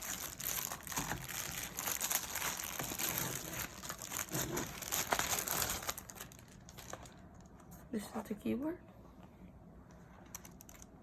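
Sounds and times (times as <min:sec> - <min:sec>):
packaging crinkling and rustling: 0:00.0 - 0:07.8.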